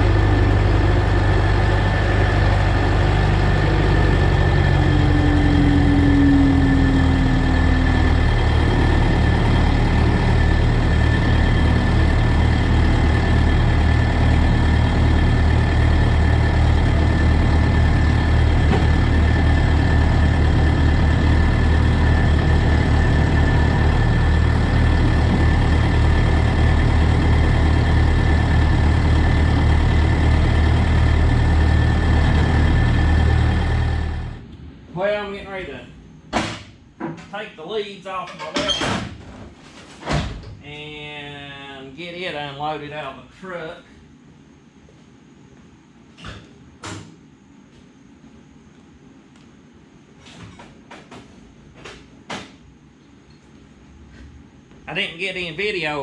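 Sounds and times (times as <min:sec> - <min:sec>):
engine idling: 0:00.0 - 0:36.2.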